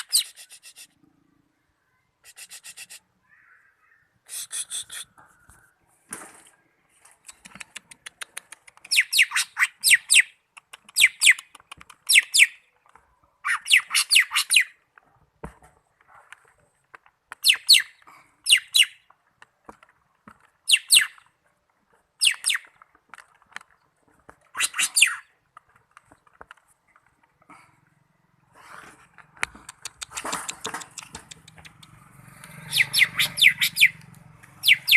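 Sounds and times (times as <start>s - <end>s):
bird whistling downward notes: 32.6s - 34.0s, 34.6s - 34.9s.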